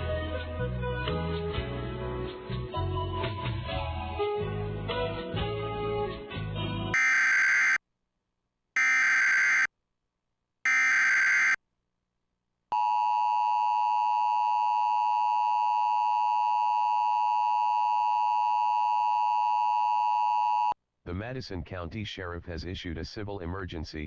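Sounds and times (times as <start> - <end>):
two-tone attention signal: 7.0 - 7.8, 8.8 - 9.7, 10.7 - 11.6
digital data bursts: 8.8 - 9.7, 10.7 - 11.6.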